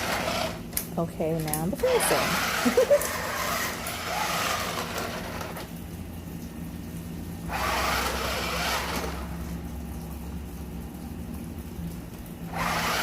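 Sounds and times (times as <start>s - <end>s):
toy truck motor whirring: 0.0s - 0.6s, 1.8s - 5.7s, 7.5s - 9.4s, 12.5s - 13.0s.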